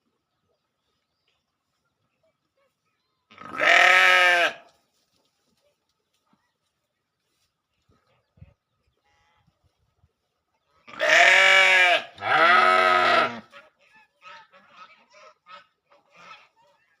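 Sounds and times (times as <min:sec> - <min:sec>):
sheep bleating: 0:03.3 - 0:04.6, 0:10.9 - 0:13.5.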